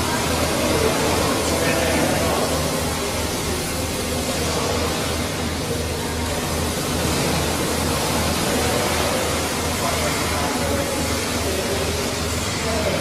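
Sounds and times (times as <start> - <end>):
machine noise with pulsing beat: 0.0 - 13.0.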